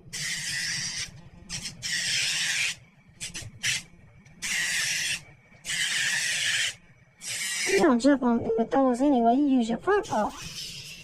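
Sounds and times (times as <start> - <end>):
nail grinder hissing: 0.1 - 3.8, 4.4 - 7.8.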